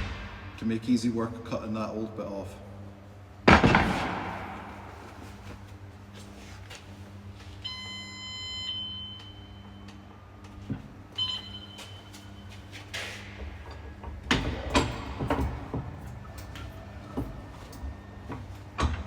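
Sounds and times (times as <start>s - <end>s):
steady low hum: 0.0s - 19.0s
short electronic beep: 11.2s - 12.6s.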